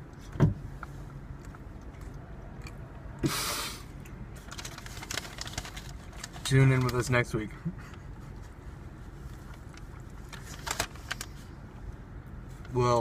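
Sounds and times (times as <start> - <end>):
person chewing: 1.0 - 3.2.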